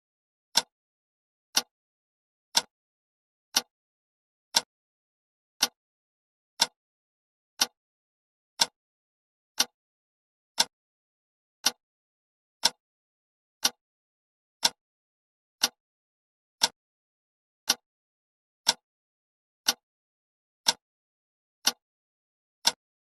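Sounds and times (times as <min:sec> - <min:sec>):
clock ticking: 0:02.5 - 0:02.7, 0:03.5 - 0:03.7, 0:04.5 - 0:04.7, 0:05.6 - 0:05.8, 0:08.6 - 0:08.8, 0:09.6 - 0:09.8, 0:10.6 - 0:10.8, 0:11.6 - 0:11.8, 0:12.6 - 0:12.8, 0:14.6 - 0:14.8, 0:15.6 - 0:15.8, 0:16.6 - 0:16.8, 0:17.6 - 0:17.8, 0:18.6 - 0:18.8, 0:19.6 - 0:19.8, 0:20.6 - 0:20.8, 0:22.6 - 0:22.8.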